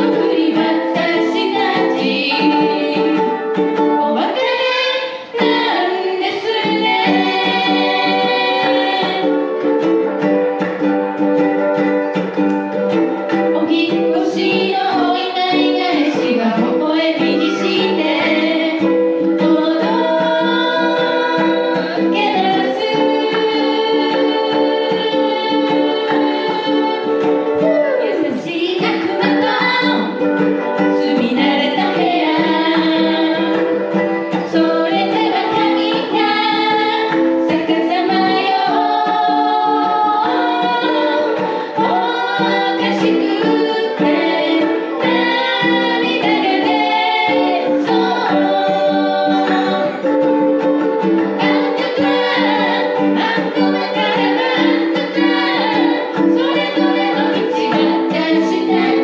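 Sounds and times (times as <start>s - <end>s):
voices singing in unison: 0.0s - 10.7s, 13.2s - 59.0s
ukuleles strummed: 0.0s - 59.0s.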